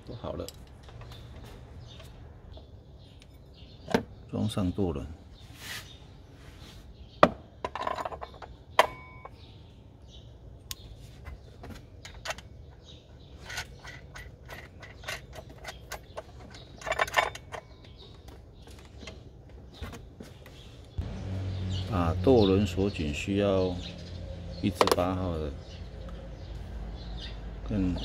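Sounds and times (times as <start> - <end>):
metal tools clinking: 13.4 - 18.1.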